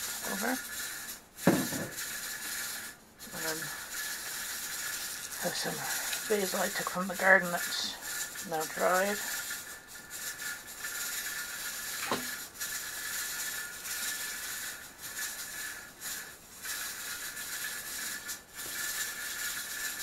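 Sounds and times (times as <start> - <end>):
pressure canner hissing steam: 0.0 - 20.0
short knock: 1.5 - 1.9.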